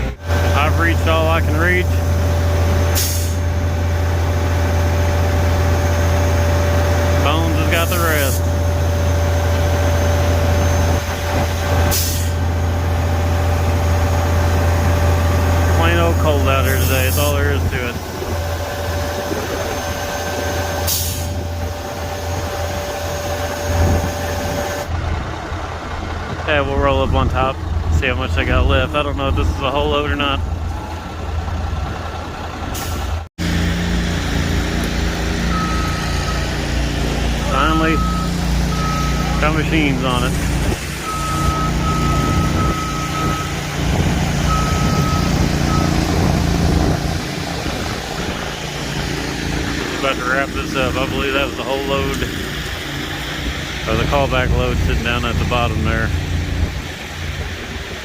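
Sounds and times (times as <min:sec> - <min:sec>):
truck engine hum: 0:00.0 - 0:58.0
short air hiss: 0:03.0 - 0:03.4, 0:11.9 - 0:12.4, 0:20.9 - 0:21.4
steady whine: 0:33.7 - 0:58.0
backup alarm beeps: 0:35.5 - 0:36.7, 0:37.4 - 0:40.1, 0:41.0 - 0:43.6, 0:44.5 - 0:46.1.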